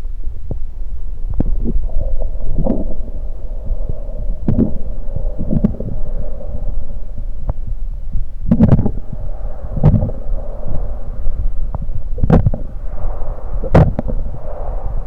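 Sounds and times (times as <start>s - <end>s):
low rumble and hum: 0.0s - 15.0s
stomach gurgling: 0.3s - 15.0s.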